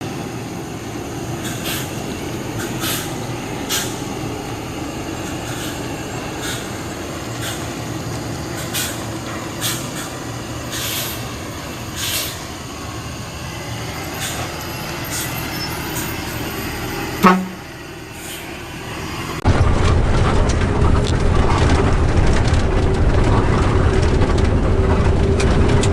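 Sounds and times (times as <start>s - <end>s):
bus engine and road rumble: 0.0s - 25.9s
short hissing bursts: 2.6s - 4.0s, 9.6s - 11.2s, 12.0s - 12.5s
brief loud tone: 14.1s - 17.7s.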